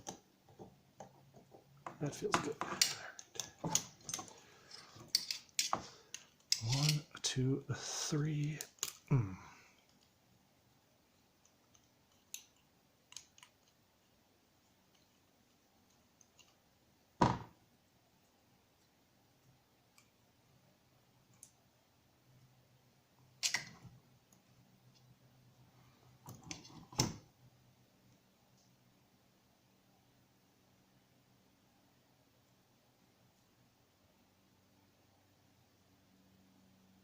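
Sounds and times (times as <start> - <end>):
hand tools clicking and knocking: 1.8 - 7.0.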